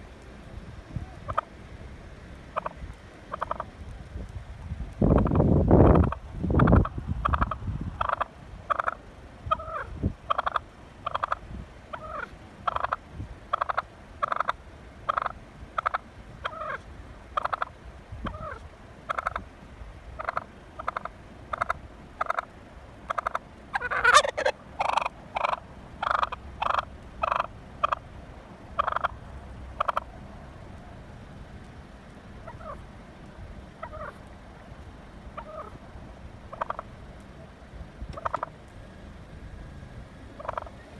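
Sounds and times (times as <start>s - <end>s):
wild turkey calling: 1.0s - 1.5s, 2.4s - 3.7s, 6.0s - 19.5s, 20.2s - 28.1s, 28.7s - 30.1s, 32.4s - 32.8s, 33.7s - 34.4s, 35.3s - 35.8s, 36.4s - 37.5s, 38.1s - 38.6s, 40.4s - 40.9s.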